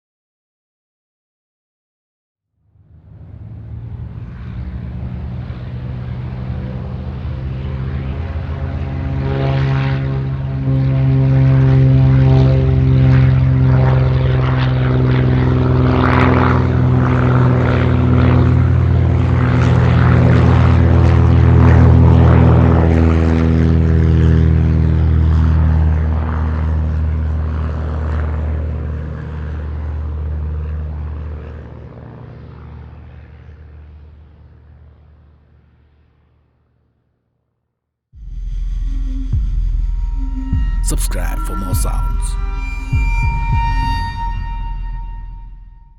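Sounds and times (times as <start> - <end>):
propeller plane flying past: 2.7 - 36.4.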